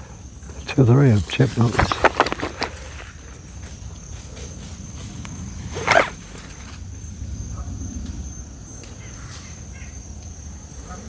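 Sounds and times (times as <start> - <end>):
footsteps on woodland trail: 0.0 - 6.8.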